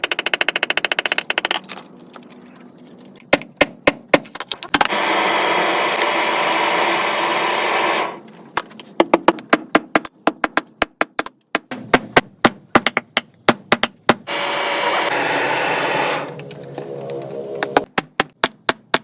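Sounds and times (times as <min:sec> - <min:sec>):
sharp metal knocks: 0:09.0 - 0:14.3, 0:17.7 - 0:19.0.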